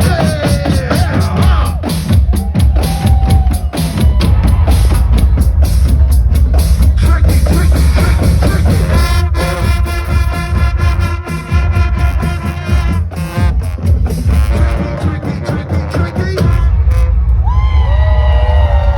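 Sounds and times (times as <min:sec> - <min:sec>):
kick drum and snare beat: 0:00.0 - 0:17.1
live band music: 0:00.0 - 0:17.5.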